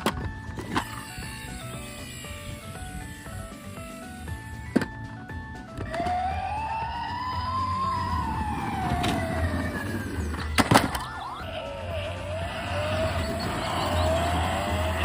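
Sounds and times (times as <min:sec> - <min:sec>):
siren wailing: 0:05.8 - 0:15.0.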